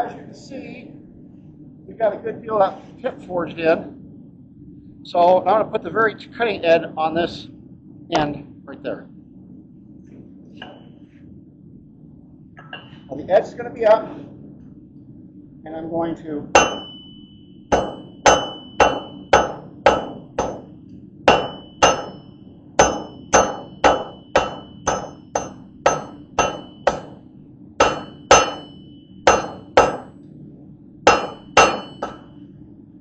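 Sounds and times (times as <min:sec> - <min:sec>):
steady low hum: 0:00.0 - 0:33.0
hammer striking hot steel on anvil: 0:16.6 - 0:20.7, 0:21.3 - 0:27.2, 0:27.8 - 0:30.1, 0:31.1 - 0:32.3.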